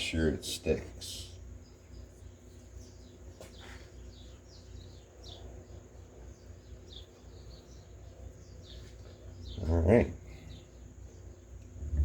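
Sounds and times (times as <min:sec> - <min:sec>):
birds chirping: 0:00.0 - 0:12.0
low outdoor rumble: 0:04.8 - 0:12.0.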